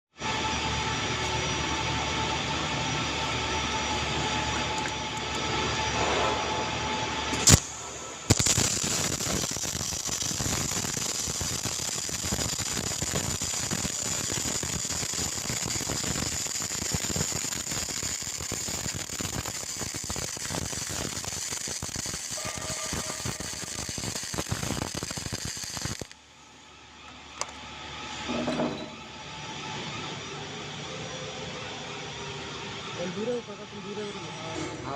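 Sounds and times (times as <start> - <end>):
steady held tones: 0.4 - 27.0
welding arc crackling: 7.3 - 26.2.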